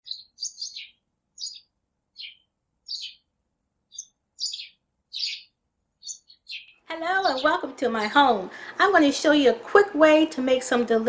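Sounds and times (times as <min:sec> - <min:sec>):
bird chirping: 0:00.0 - 0:08.4.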